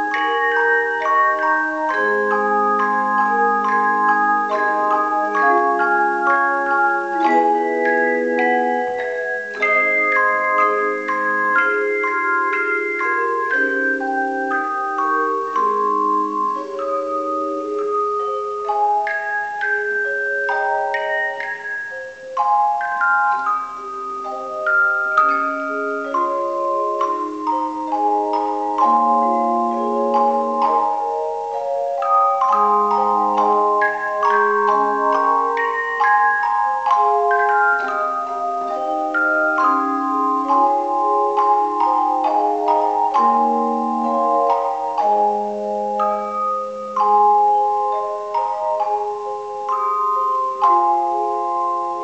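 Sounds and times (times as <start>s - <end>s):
tone chimes playing a melody: 0.0s - 52.0s.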